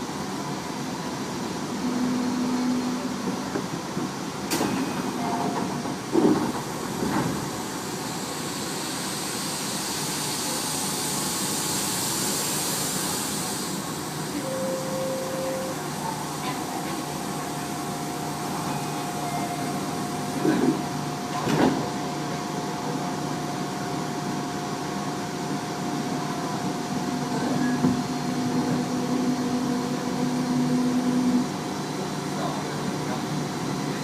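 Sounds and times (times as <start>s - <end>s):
train rail and running noise: 0.0s - 34.0s
electric train motor whine: 1.7s - 3.3s, 12.8s - 23.3s, 26.9s - 31.6s.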